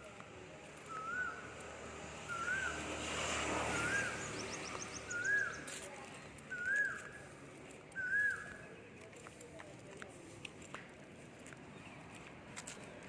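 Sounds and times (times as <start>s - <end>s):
outdoor noise: 0.0s - 13.0s
bird whistling: 0.9s - 1.4s, 2.3s - 2.8s, 3.7s - 5.7s, 6.5s - 7.2s, 8.0s - 8.6s.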